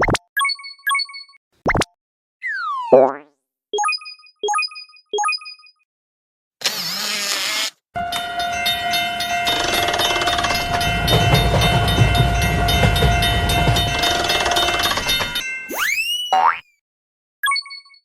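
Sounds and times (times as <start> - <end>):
springy boing: 2.5 - 3.4
cartoon train clicking: 8.0 - 15.5
held steady tones: 8.0 - 15.7.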